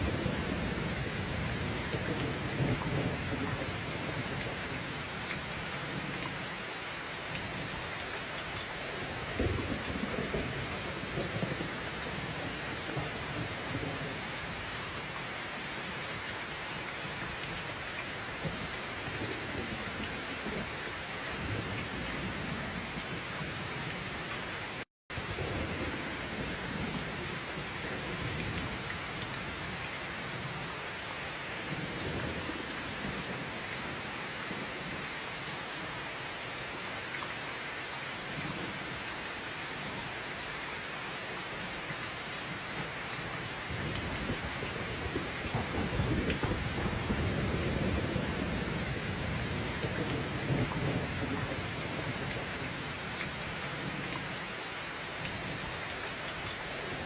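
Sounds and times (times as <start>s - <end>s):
heavy rain pouring: 0.0s - 57.0s
rolling thunder rumbles: 43.7s - 52.8s.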